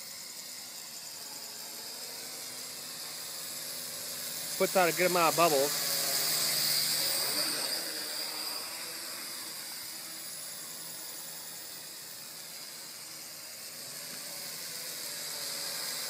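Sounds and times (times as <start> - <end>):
quadcopter propellers whirring: 0.0 - 16.0.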